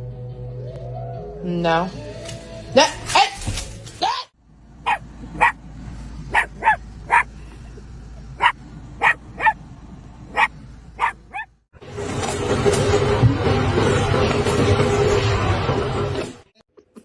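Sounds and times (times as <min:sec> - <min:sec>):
dog barking: 0:04.8 - 0:05.6, 0:06.3 - 0:07.3, 0:08.4 - 0:09.6, 0:10.3 - 0:11.5.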